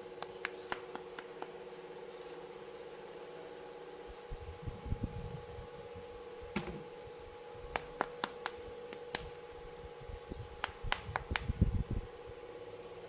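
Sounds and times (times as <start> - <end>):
soft thumps: 6.5 - 7.0.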